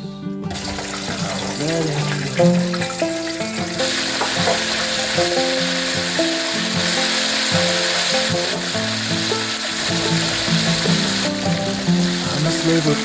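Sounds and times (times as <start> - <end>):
background music of sustained notes: 0.0 - 13.0
food sizzling in hot oil: 0.5 - 13.0.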